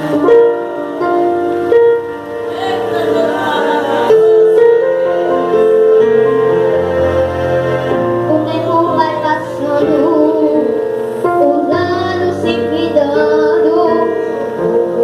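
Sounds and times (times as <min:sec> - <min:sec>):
congregation singing: 0:00.0 - 0:10.8.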